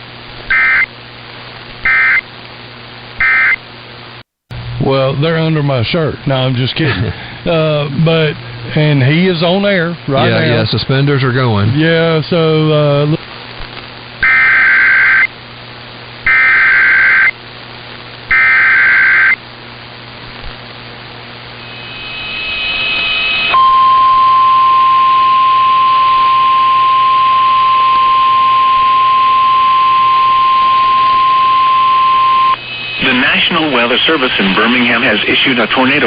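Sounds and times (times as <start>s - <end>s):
steady warning alarm tone: 0.5s - 0.9s, 1.9s - 2.2s, 3.2s - 3.6s, 14.2s - 15.3s, 16.3s - 17.3s, 18.3s - 19.4s, 21.6s - 35.8s
screeching digital data tones: 3.2s - 3.6s, 16.3s - 17.3s, 18.3s - 19.4s, 21.6s - 36.0s.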